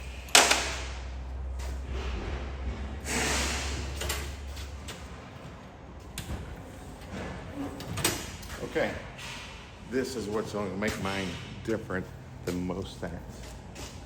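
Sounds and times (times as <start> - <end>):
low hum: 0.0 - 10.2
toolbox drawers sliding and rattling: 1.6 - 9.5.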